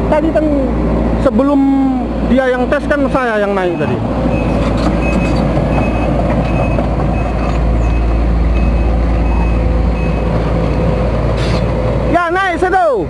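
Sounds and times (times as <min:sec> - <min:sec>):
excavator engine humming: 0:00.0 - 0:13.0
travel alarm beeping: 0:03.3 - 0:12.2.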